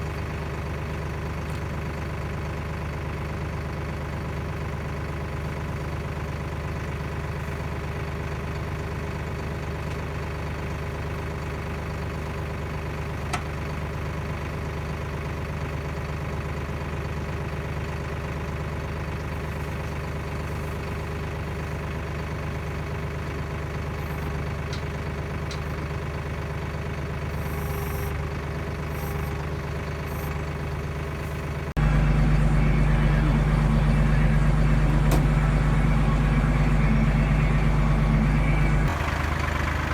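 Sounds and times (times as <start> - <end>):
tractor engine idling: 0.0 - 39.9.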